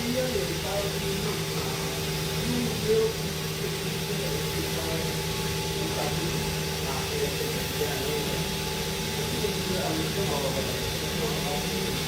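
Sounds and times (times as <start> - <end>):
milking machinery hum: 0.0 - 12.0.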